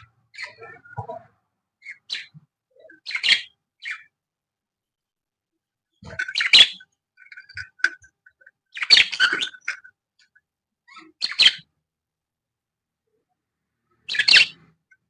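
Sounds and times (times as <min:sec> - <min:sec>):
lovebirds chirping and screeching: 0:00.0 - 0:04.2, 0:06.0 - 0:10.0, 0:10.9 - 0:11.7, 0:14.0 - 0:14.8.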